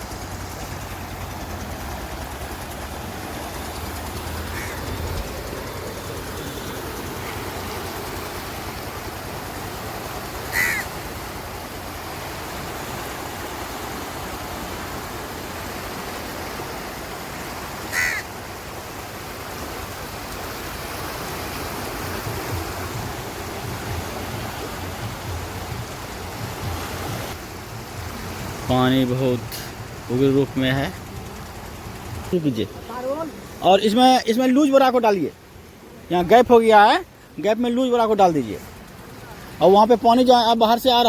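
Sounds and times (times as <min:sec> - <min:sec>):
river rushing: 0:00.0 - 0:41.0
bird call: 0:04.4 - 0:05.2, 0:10.4 - 0:11.0, 0:17.9 - 0:18.3.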